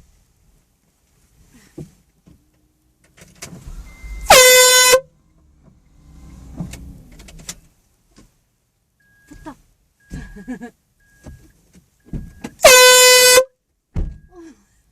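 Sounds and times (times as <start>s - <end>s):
air horn blast: 4.0s - 5.2s, 12.6s - 13.5s.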